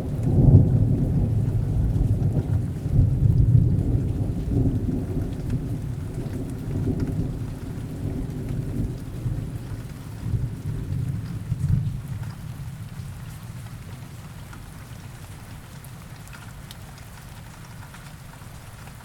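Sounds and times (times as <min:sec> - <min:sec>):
rolling thunder: 0:00.0 - 0:12.1
steady rain: 0:00.0 - 0:19.0.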